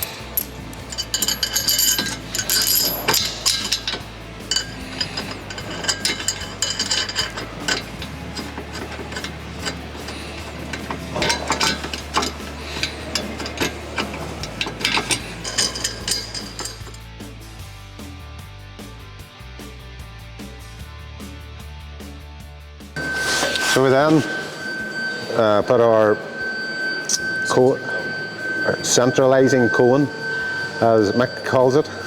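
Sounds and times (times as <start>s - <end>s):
metal tools clinking and ratcheting: 0.0s - 17.1s, 23.0s - 25.1s.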